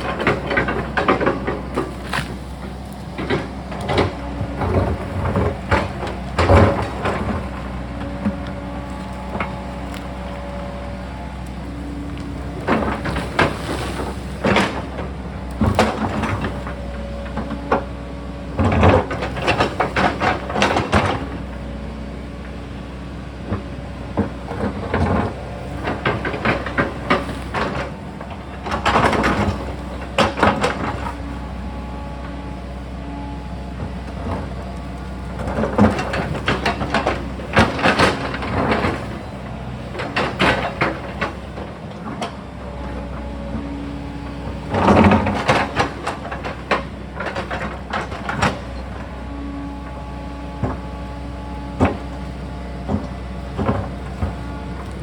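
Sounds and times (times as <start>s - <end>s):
bucket scraping and clanking on rock: 0.0s - 10.3s, 11.8s - 17.7s
excavator diesel engine running: 0.0s - 55.0s.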